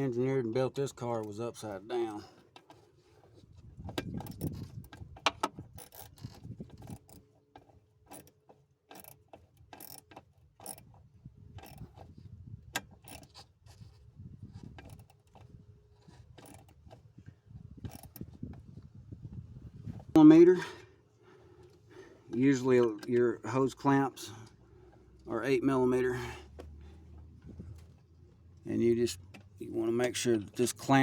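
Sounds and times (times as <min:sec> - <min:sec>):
metallic clicks of hand tools: 0:04.0 - 0:10.9, 0:11.6 - 0:11.8, 0:12.8 - 0:13.4, 0:17.9 - 0:18.3.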